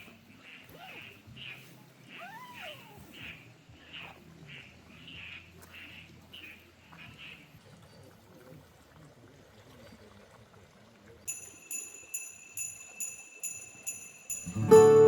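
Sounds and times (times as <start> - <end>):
faint background hiss: 11.3 - 15.0
jingle bells shaken: 11.3 - 15.0.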